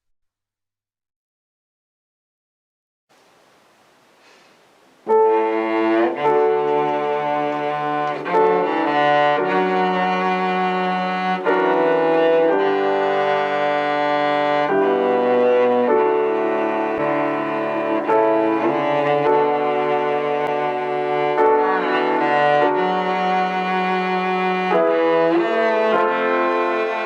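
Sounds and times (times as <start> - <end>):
faint hiss: 3.1 - 10.8
slow cello and piano piece: 4.2 - 27.0.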